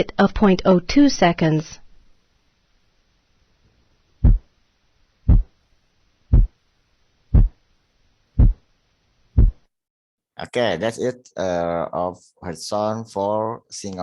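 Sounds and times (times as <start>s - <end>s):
heartbeat thuds: 4.2s - 4.5s, 5.3s - 5.5s, 6.3s - 6.6s, 7.3s - 7.6s, 8.4s - 8.6s, 9.4s - 9.7s.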